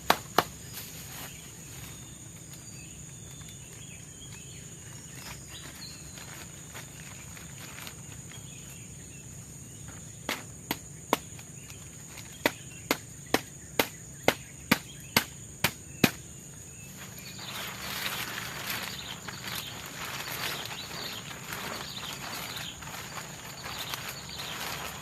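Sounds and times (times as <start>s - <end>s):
insects droning: 0.0s - 25.0s
rustling: 0.6s - 8.8s, 16.8s - 25.0s.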